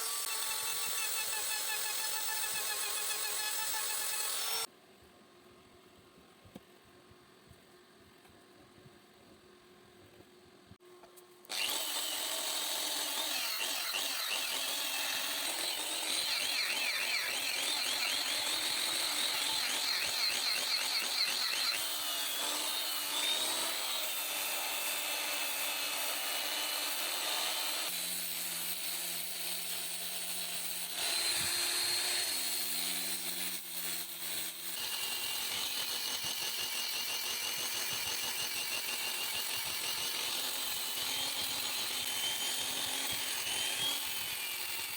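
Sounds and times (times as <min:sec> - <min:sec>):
power tool cutting wood: 0:00.0 - 0:04.7, 0:11.5 - 0:44.9.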